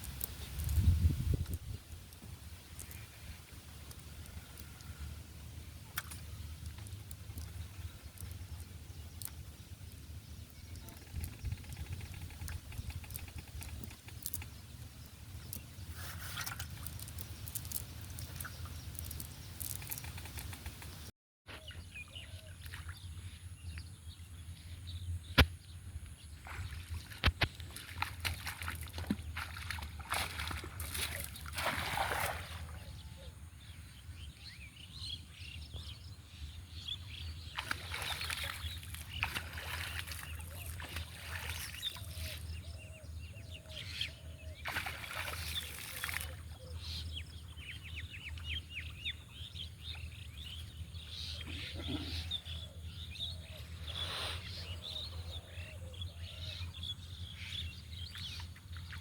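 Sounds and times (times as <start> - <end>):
water sloshing and splashing: 10.8 - 20.9, 26.4 - 32.9, 37.5 - 42.7, 44.6 - 47.7.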